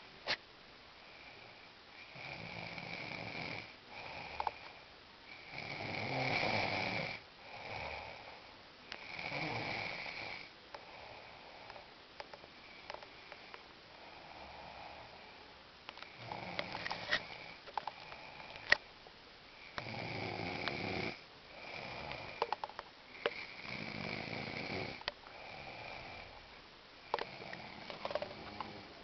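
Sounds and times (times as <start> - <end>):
man snoring loudly: 2.1 - 4.4, 5.4 - 8.3, 9.0 - 11.2, 16.2 - 17.6, 19.8 - 22.4, 23.2 - 26.4, 27.2 - 29.0.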